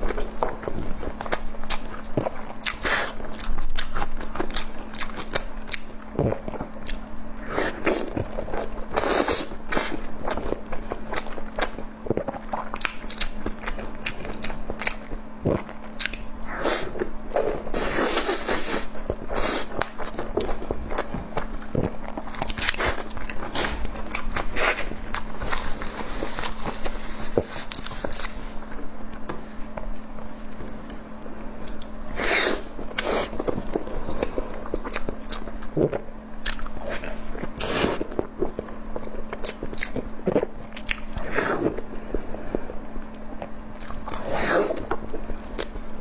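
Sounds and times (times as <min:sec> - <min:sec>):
close chewing and biting: 0:00.0 - 0:29.3, 0:30.0 - 0:45.9
faint low hum: 0:00.0 - 0:46.0.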